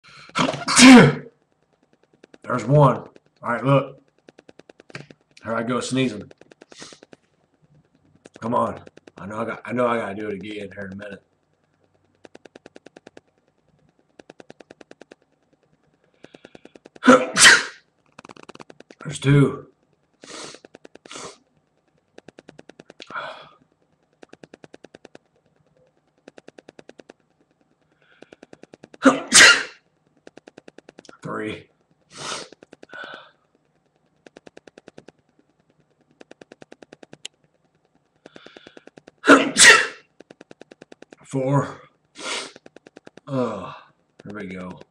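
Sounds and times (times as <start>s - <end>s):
rapid clicking: 0.1s - 44.9s
man sneezing: 0.4s - 1.3s, 17.0s - 17.8s, 29.0s - 29.8s, 39.2s - 40.0s
quick even ticks: 1.3s - 19.1s, 19.7s - 44.9s.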